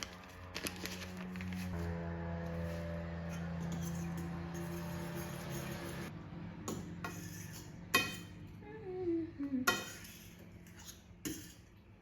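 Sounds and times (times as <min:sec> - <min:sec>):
utensils clinking on dishes: 0:06.7 - 0:08.4.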